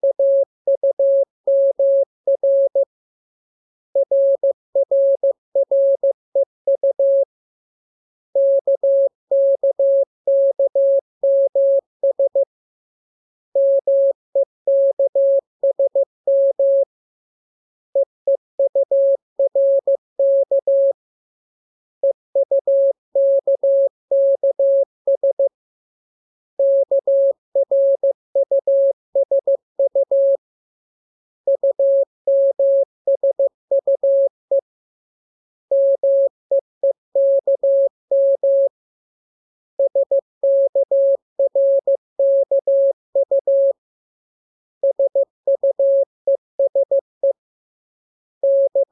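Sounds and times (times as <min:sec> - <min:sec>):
morse code beeps: 0:35.7 - 0:38.7, 0:48.4 - 0:48.9.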